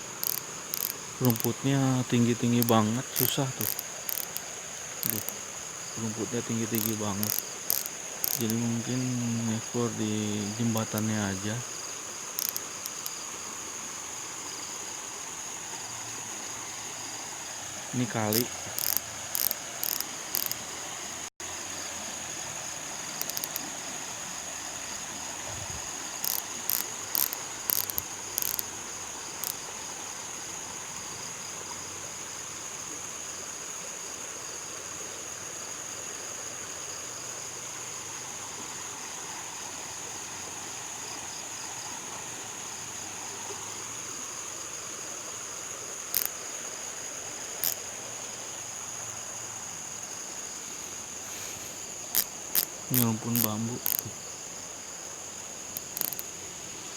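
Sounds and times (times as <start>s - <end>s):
insect chorus trilling: 0.0s - 56.9s
high crackles: 0.2s - 1.8s, 2.4s - 5.4s, 6.0s - 8.7s, 12.4s - 13.1s, 18.0s - 20.6s, 23.2s - 23.6s, 26.2s - 28.7s, 50.7s - 54.2s, 55.8s - 56.3s.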